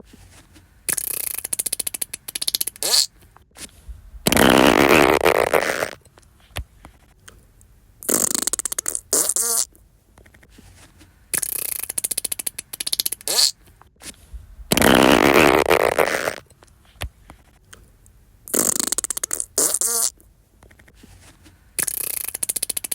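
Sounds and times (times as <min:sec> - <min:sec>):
fart sound effects: 0:00.9 - 0:03.1, 0:04.2 - 0:06.0, 0:08.0 - 0:09.7, 0:11.4 - 0:13.6, 0:14.6 - 0:16.5, 0:18.5 - 0:20.2, 0:21.8 - 0:22.9.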